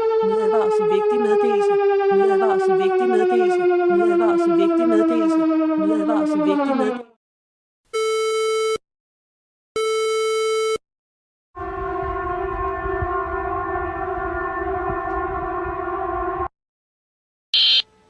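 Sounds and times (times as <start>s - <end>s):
civil defence siren chord: 0.0s - 6.9s, 11.6s - 16.5s.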